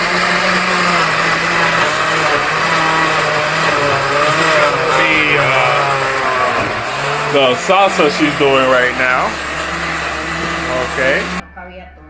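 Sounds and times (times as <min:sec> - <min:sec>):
kitchen blender running: 0:00.0 - 0:11.4.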